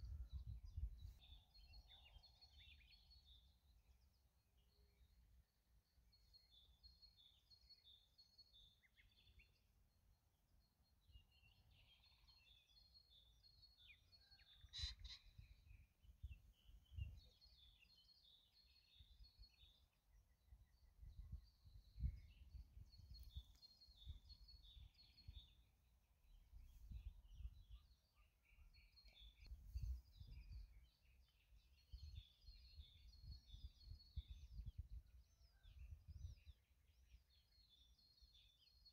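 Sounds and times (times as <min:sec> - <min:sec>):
wind rumbling on microphone: 0:00.0 - 0:02.0, 0:15.0 - 0:17.4, 0:20.6 - 0:25.6, 0:26.3 - 0:27.9, 0:28.7 - 0:31.0, 0:31.8 - 0:36.6
songbirds twittering: 0:00.0 - 0:38.9.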